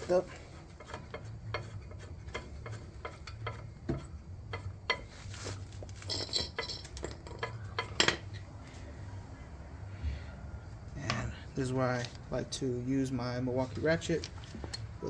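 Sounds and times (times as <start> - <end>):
metal tools clicking and clinking: 5.9 - 8.4.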